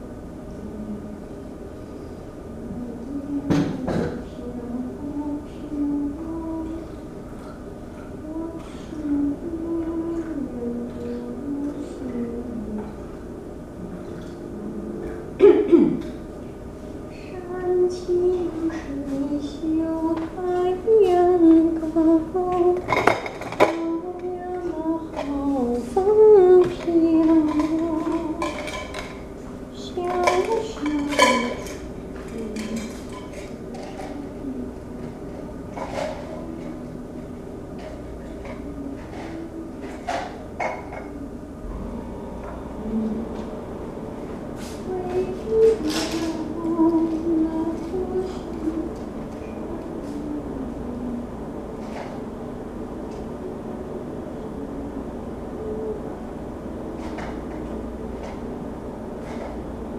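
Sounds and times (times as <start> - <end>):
person humming: 0.5 - 7.6, 8.2 - 13.1, 13.8 - 16.2, 17.1 - 22.9, 23.7 - 28.7, 29.7 - 37.0, 38.2 - 40.2, 41.0 - 51.6, 54.5 - 56.2.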